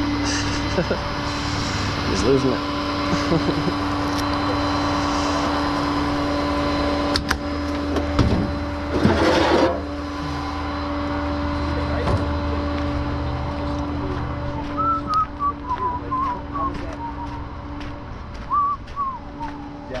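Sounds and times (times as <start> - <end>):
mechanical hum: 0.0 - 20.0.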